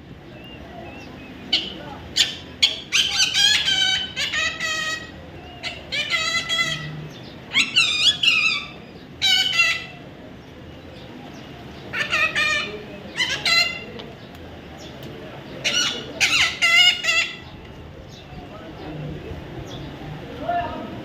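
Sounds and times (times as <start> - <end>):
parrot raspy chatter: 1.5 - 6.9, 7.5 - 10.0, 11.9 - 13.9, 15.6 - 17.5.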